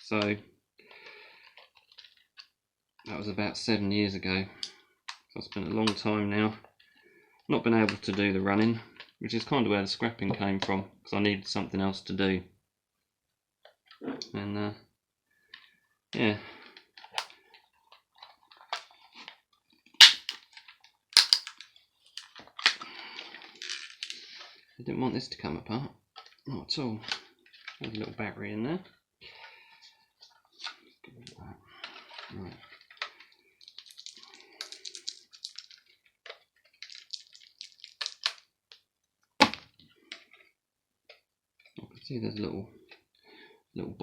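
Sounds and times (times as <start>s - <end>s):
plastic casing cracking: 20.0s - 20.5s, 21.2s - 22.8s, 33.6s - 35.8s, 36.8s - 38.4s
plastic casing clicks and taps: 21.2s - 21.6s.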